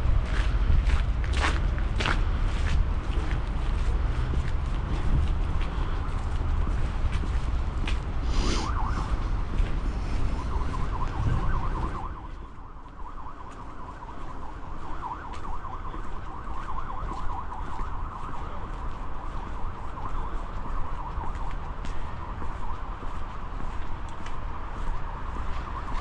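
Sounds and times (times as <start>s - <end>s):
siren wavering: 4.6s - 23.8s, 24.7s - 26.0s.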